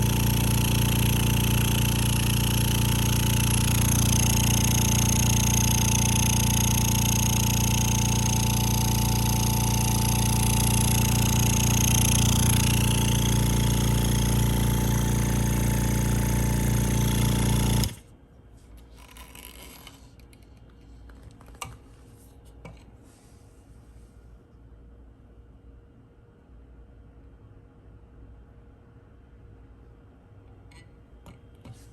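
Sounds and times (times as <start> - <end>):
vacuum pump motor hum: 0.0 - 18.2.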